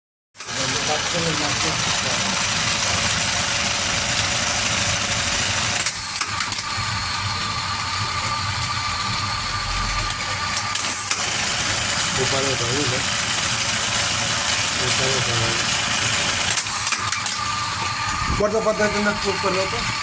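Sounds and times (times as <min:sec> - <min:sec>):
sewing machine running: 0:00.4 - 0:20.0
high whine: 0:17.5 - 0:20.0.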